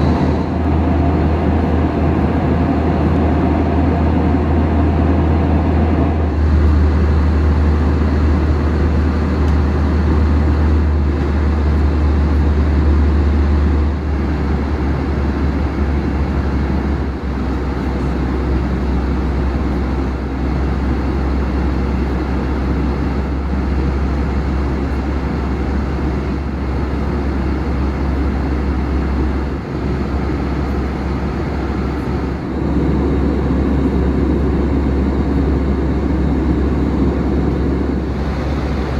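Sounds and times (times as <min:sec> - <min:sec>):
engine and airflow rush: 0:00.0 - 0:38.9.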